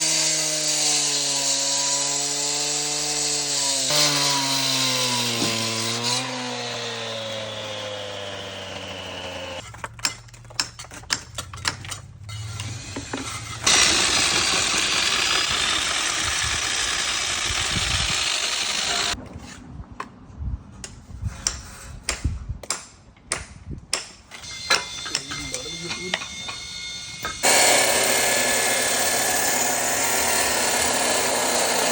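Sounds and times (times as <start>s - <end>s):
cutting or drilling noise: 0.0s - 9.6s, 12.3s - 19.2s, 24.4s - 31.9s
motorised power tool wavering: 12.3s - 19.2s, 24.4s - 31.9s.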